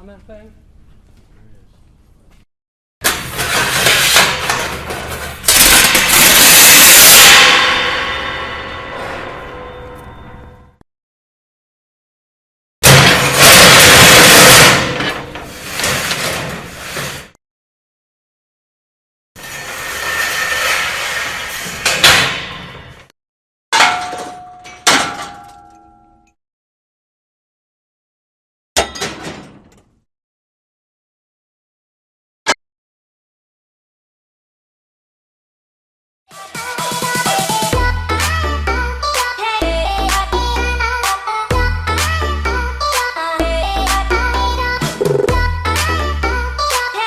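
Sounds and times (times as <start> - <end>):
metal clattering and crashing: 3.0 - 9.8, 12.8 - 17.3, 23.8 - 25.8, 28.8 - 29.8
metal object scraping: 3.1 - 10.8, 19.4 - 22.9
ringing metallic tones: 7.6 - 10.7
metal clank: 23.8 - 26.1, 28.8 - 29.8.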